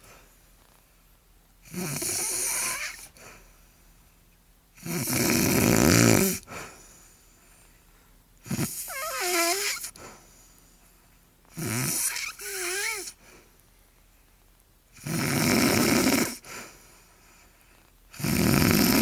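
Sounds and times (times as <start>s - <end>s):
quiet breathing: 0.0s - 1.1s, 2.0s - 4.4s, 6.4s - 14.6s, 16.3s - 18.2s
woman snoring: 1.7s - 3.1s, 4.8s - 6.5s, 8.5s - 10.0s, 11.5s - 13.2s, 15.0s - 16.4s, 18.1s - 19.0s.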